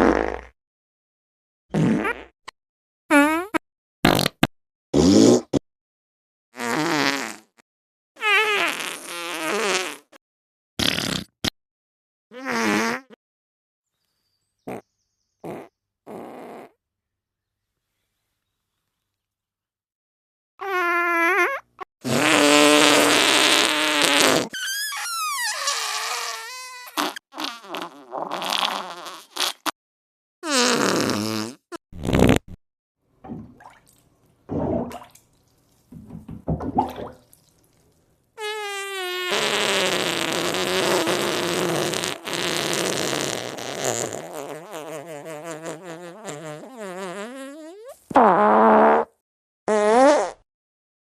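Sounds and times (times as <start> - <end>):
fart sound effects: 0.0 - 0.6, 1.7 - 2.4, 3.1 - 5.6, 6.6 - 7.6, 8.2 - 10.2, 10.8 - 11.5, 12.3 - 13.2, 15.4 - 16.8, 20.6 - 29.8, 30.4 - 32.6, 34.5 - 35.2, 36.0 - 37.2, 38.4 - 50.5.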